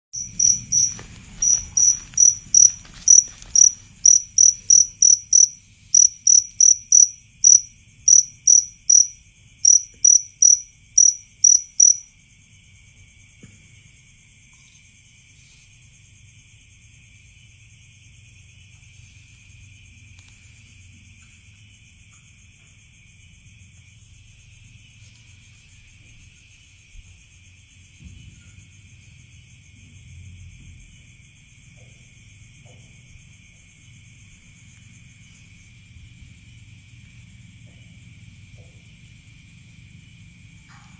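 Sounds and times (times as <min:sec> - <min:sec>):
insect chirping: 0:00.1 - 0:40.9
faint high insect trilling: 0:00.2 - 0:12.8.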